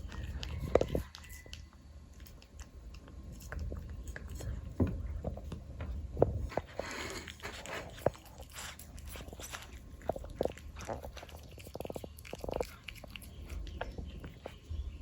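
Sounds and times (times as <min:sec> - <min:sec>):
cat chewing and licking: 0:00.0 - 0:15.0.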